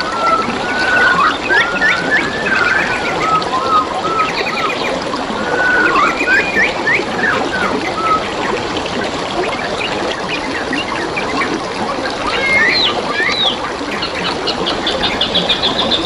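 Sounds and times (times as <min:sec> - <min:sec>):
birds chirping and whistling: 0:00.0 - 0:08.7, 0:12.3 - 0:16.0
stream trickling: 0:00.0 - 0:16.0.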